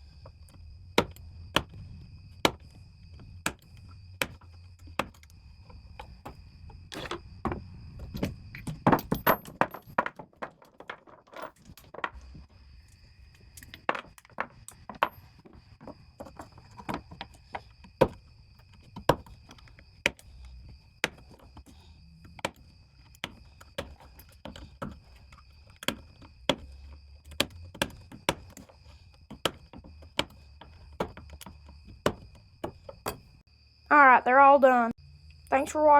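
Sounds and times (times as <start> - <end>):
sockets being handled: 13.4 - 33.4.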